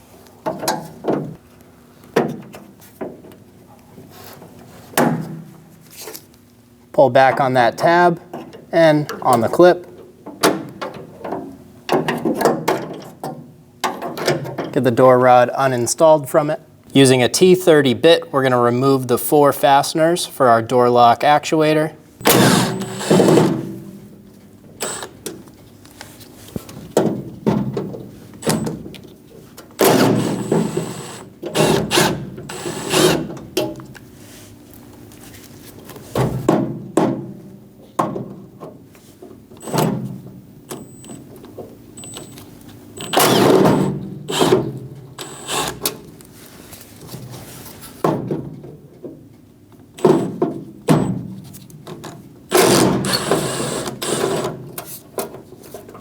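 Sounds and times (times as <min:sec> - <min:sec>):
knocks and clunks of tool handling: 0:00.4 - 0:01.4, 0:02.2 - 0:03.4, 0:07.8 - 0:14.8, 0:26.5 - 0:30.8, 0:35.9 - 0:42.4, 0:48.0 - 0:49.4
power driver removing screws: 0:22.2 - 0:23.5, 0:24.8 - 0:25.2, 0:29.8 - 0:33.3, 0:43.0 - 0:44.6, 0:45.2 - 0:45.9, 0:50.0 - 0:51.1, 0:52.5 - 0:54.5.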